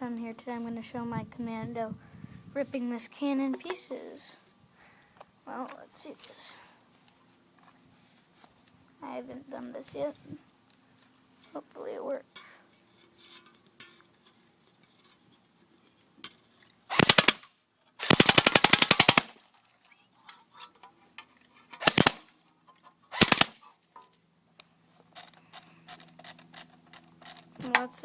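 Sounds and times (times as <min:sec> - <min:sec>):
airsoft rifle automatic fire: 0:16.9 - 0:19.4, 0:21.8 - 0:22.3, 0:23.1 - 0:23.6.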